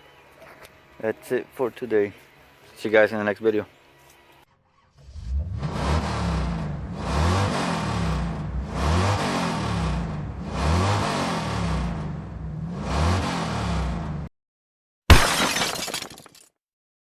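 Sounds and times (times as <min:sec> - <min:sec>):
car engine revving: 0:05.0 - 0:14.3.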